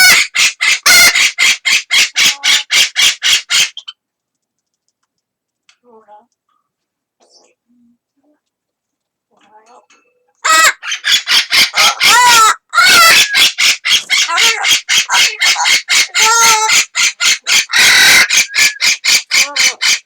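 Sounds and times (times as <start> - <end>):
parrot squawking: 0.0 - 4.0, 10.4 - 20.0.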